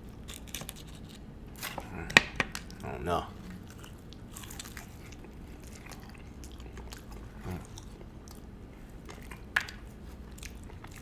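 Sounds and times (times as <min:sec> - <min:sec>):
person chewing and biting: 0:00.0 - 0:11.0.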